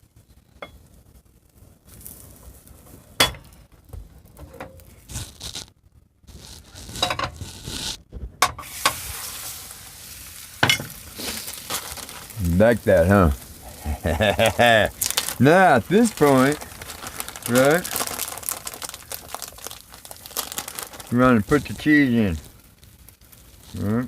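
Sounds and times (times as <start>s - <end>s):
omelet sizzling in a frying pan: 0.0s - 24.0s
spatula scraping a pan: 6.4s - 8.0s, 8.6s - 12.3s.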